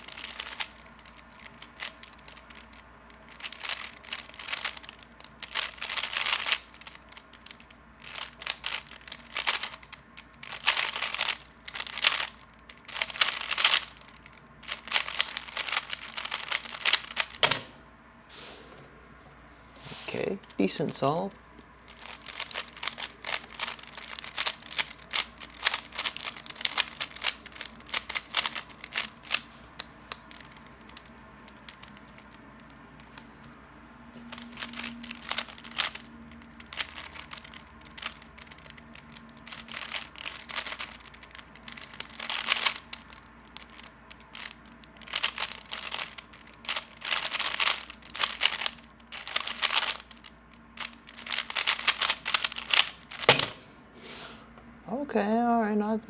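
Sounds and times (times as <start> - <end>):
speed cube plastic clicks and rattles: 0.0 - 17.7, 21.5 - 33.6, 34.2 - 53.6.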